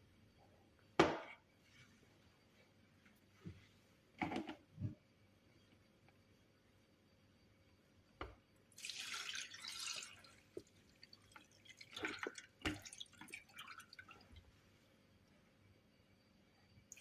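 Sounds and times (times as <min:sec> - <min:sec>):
liquid pouring: 0:08.8 - 0:14.4
splashes and drips: 0:08.8 - 0:14.4.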